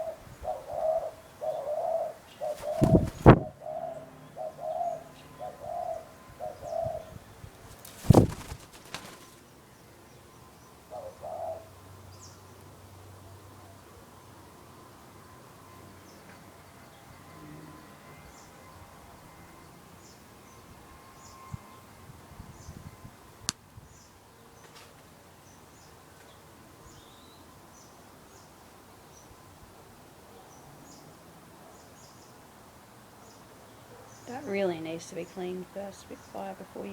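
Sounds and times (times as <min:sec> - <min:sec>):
brief scuffle: 0:07.8 - 0:09.1.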